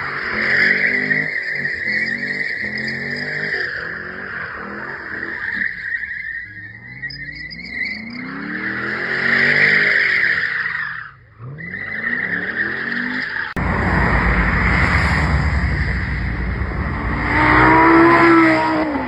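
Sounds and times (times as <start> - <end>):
loud rushing noise: 13.6 - 19.0
sports car engine revving: 13.6 - 19.0.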